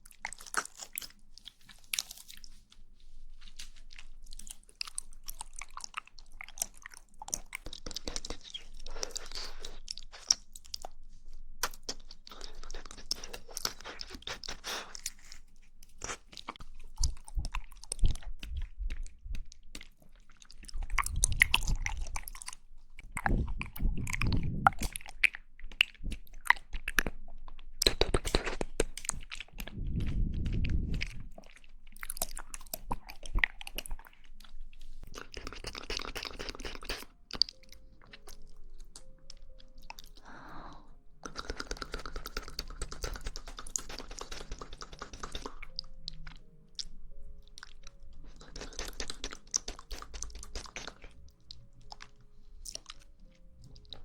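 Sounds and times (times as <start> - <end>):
wet chewing and squelching: 0.0 - 54.0
small mouth clicks: 20.6 - 27.2, 35.1 - 38.4, 41.2 - 46.9, 48.2 - 53.1.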